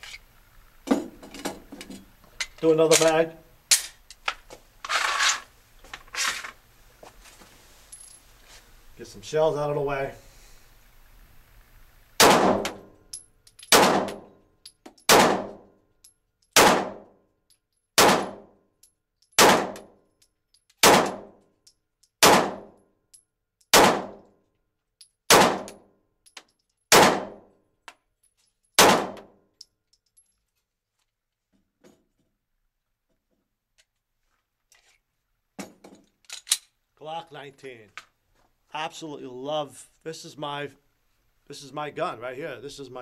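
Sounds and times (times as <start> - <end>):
pistol shots indoors: 12.2 - 13.0, 13.7 - 14.4, 15.1 - 15.7, 16.5 - 17.2, 18.0 - 18.6, 19.4 - 20.0, 20.8 - 21.4, 22.2 - 22.8, 23.7 - 24.3, 25.3 - 25.8, 26.9 - 27.5, 28.8 - 29.4.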